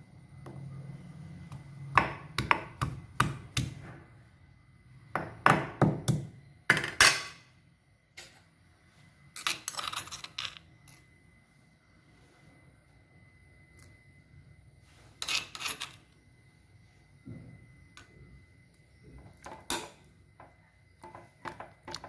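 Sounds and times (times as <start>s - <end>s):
kitchen utensils knocking and clinking: 6.7s - 7.4s.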